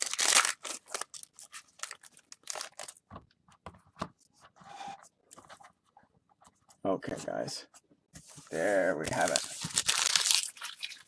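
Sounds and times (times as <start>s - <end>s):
packaging tearing and crinkling: 0.0s - 3.0s, 9.1s - 11.0s.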